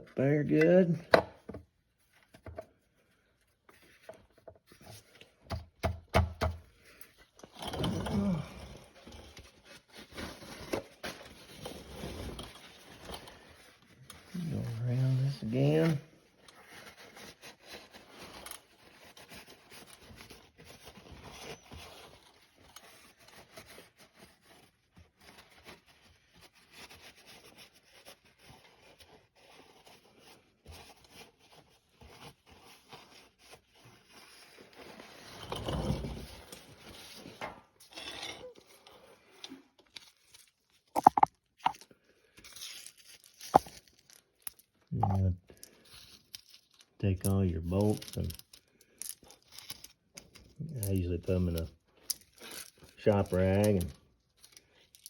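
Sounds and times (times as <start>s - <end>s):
hand scraping and rubbing metal: 45.0s - 45.3s.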